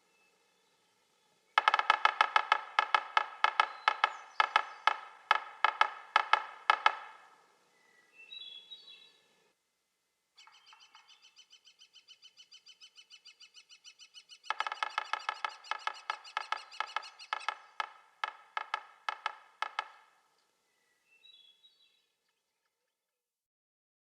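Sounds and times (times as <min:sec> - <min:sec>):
woodpecker drumming and tapping: 0:01.5 - 0:07.5, 0:10.4 - 0:22.7
rapid bird note series: 0:01.6 - 0:07.3, 0:14.5 - 0:20.2
bird call notes: 0:01.6 - 0:09.2, 0:10.4 - 0:20.1.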